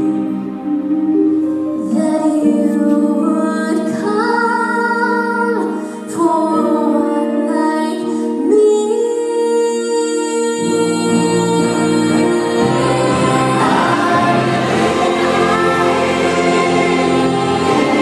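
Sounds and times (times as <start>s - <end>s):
woman singing slow melody: 1.8s - 13.9s
sustained accompaniment: 10.6s - 18.0s.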